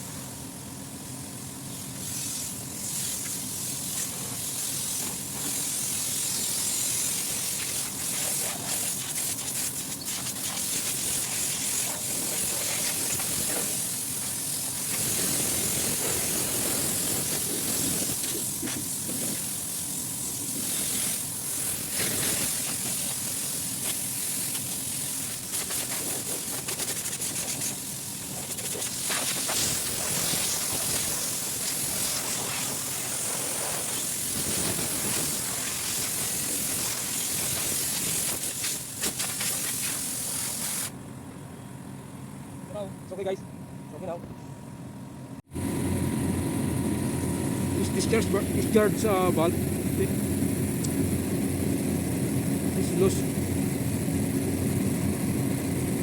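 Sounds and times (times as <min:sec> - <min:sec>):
loud hiss of spraying gas: 0:01.5 - 0:40.9
low machine hum: 0:40.9 - 0:56.0.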